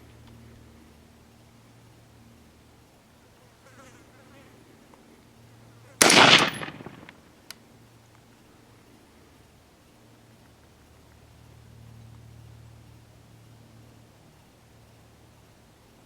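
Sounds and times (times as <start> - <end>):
rifle shot with echo: 6.0 - 7.2.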